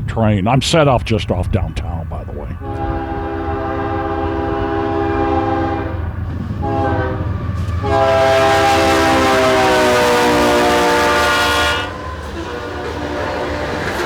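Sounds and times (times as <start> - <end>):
locomotive air horn blasts: 2.6 - 13.8.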